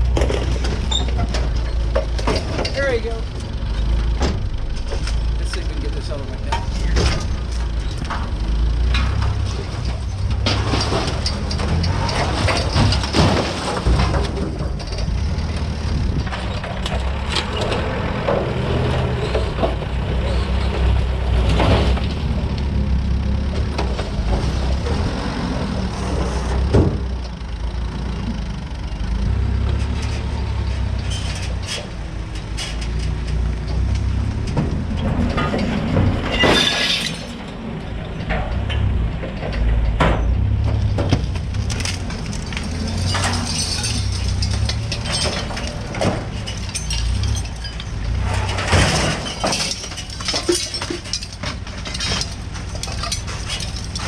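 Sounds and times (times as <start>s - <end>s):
engine running: 0.0s - 54.0s
sheet metal clanking and crashing: 0.1s - 18.4s, 31.0s - 54.0s.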